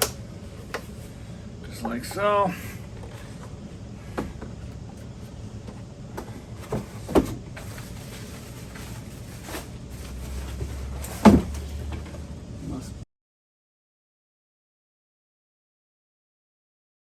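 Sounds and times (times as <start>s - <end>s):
plastic parts knocking and clunking: 5.6s - 7.4s, 10.6s - 12.1s.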